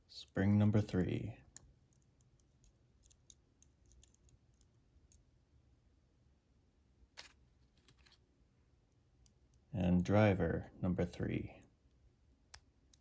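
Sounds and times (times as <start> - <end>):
small clicks of lock parts: 1.5 - 5.3, 12.5 - 13.0.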